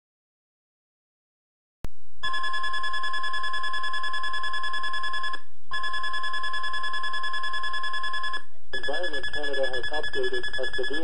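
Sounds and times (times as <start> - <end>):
high electronic alert tone: 2.2 - 11.0.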